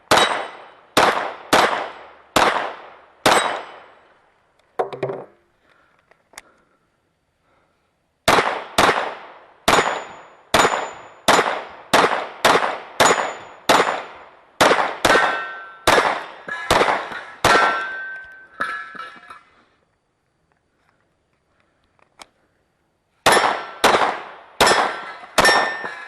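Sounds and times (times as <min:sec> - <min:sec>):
bullets clanging on steel targets: 0:00.0 - 0:00.9, 0:03.2 - 0:04.0, 0:09.7 - 0:12.1, 0:13.0 - 0:14.2, 0:15.0 - 0:19.5, 0:24.6 - 0:26.0
gunshots: 0:00.1 - 0:03.9, 0:08.3 - 0:18.0, 0:23.2 - 0:26.0.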